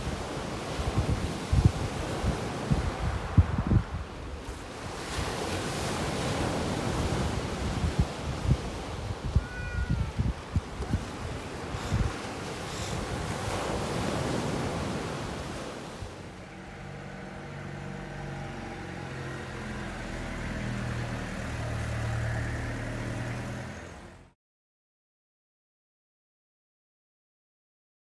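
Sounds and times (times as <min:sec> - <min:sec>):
wind buffeting microphone: 0:00.0 - 0:20.1
stormy sea surf: 0:00.0 - 0:24.1.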